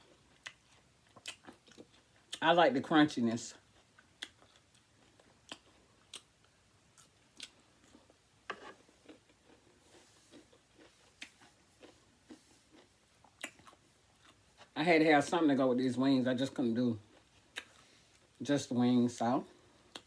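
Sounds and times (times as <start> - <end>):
person chewing crunchy food: 0.0 - 2.4, 3.6 - 14.8, 17.0 - 18.4, 19.6 - 20.0.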